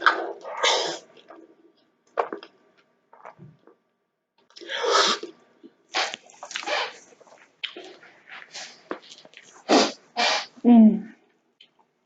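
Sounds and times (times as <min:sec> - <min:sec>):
wet chewing and smacking: 0:05.2 - 0:09.6.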